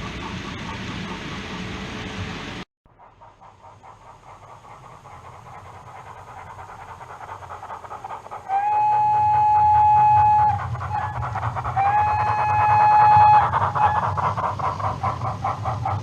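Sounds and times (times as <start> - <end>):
model locomotive chuffing: 0.0 - 16.0
train rumbling on track: 0.0 - 16.0
train whistle blasts: 8.5 - 10.6, 11.8 - 13.4.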